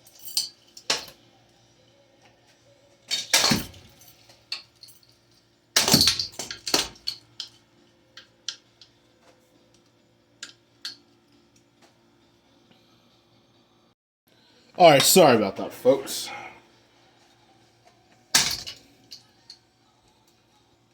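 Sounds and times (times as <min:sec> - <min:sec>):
ceiling fan being smashed: 0:00.2 - 0:01.2, 0:03.1 - 0:04.3, 0:05.8 - 0:07.2, 0:18.4 - 0:18.9
loose pieces clinking and rattling: 0:03.1 - 0:05.1, 0:05.8 - 0:07.6.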